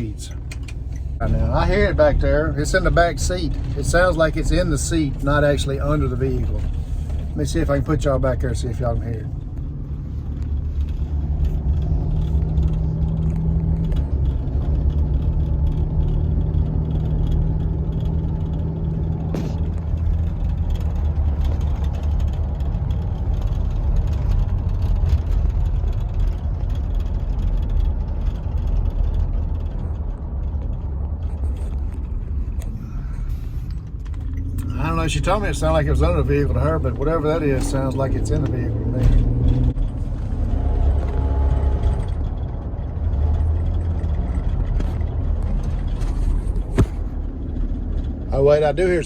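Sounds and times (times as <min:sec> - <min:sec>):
road and drivetrain rumble: 0:00.0 - 0:49.0
faint ticking and rattling: 0:00.2 - 0:38.7.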